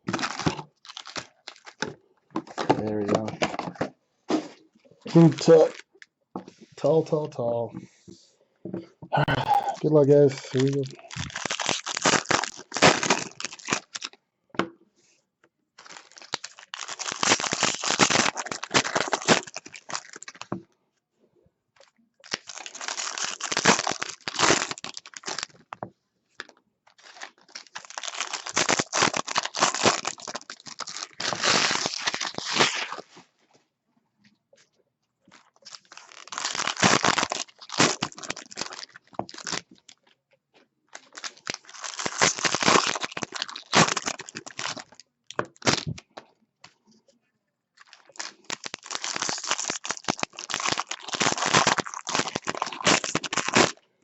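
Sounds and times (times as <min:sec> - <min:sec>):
card pack wrappers tearing: 0:00.0 - 0:01.9, 0:05.1 - 0:05.8, 0:09.9 - 0:14.2, 0:15.8 - 0:20.5, 0:22.2 - 0:25.6, 0:27.0 - 0:33.1, 0:35.3 - 0:39.9, 0:40.9 - 0:46.0, 0:47.8 - 0:53.8.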